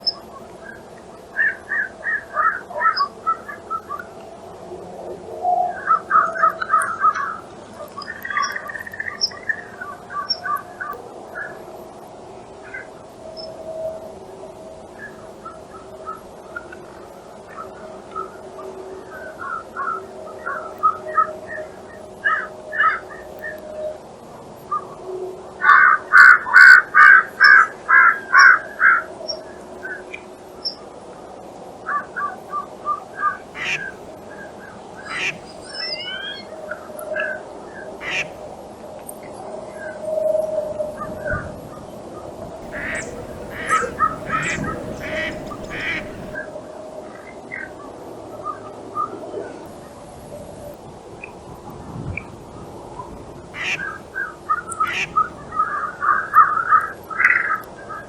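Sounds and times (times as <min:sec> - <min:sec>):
harsh caw-like bird calls: 0:33.6 - 0:34.0, 0:35.1 - 0:36.2, 0:38.0 - 0:38.4, 0:42.6 - 0:46.4, 0:53.6 - 0:54.0, 0:54.8 - 0:55.3.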